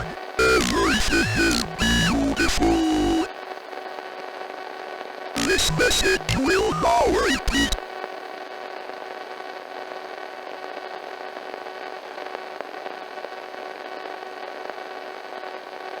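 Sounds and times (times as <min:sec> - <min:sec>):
static hiss: 0:00.0 - 0:03.3, 0:05.4 - 0:07.8.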